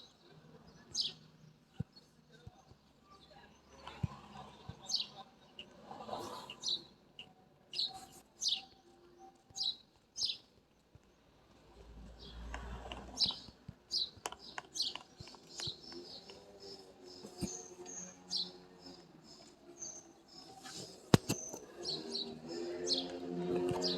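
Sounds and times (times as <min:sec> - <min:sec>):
small bird chirping: 0:13.2 - 0:23.1.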